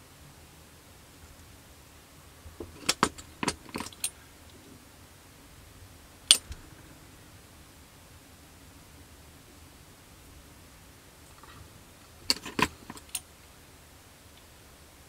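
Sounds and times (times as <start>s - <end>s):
plastic parts and tools clicking: 2.6s - 4.1s, 12.2s - 13.2s.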